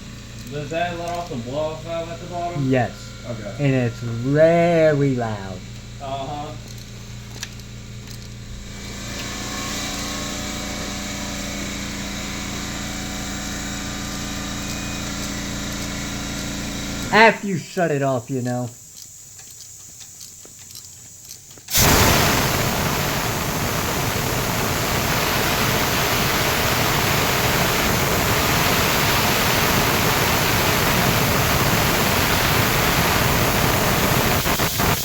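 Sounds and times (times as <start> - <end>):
compressed air hissing: 16.4 - 35.0.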